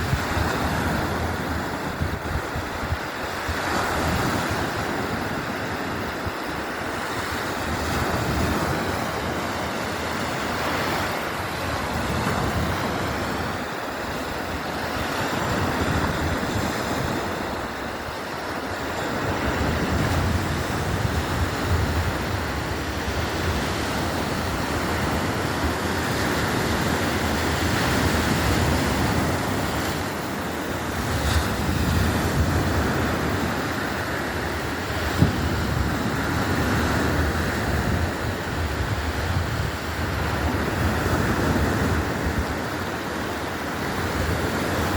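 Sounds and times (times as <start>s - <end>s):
waves breaking on shore: 0.0s - 44.9s.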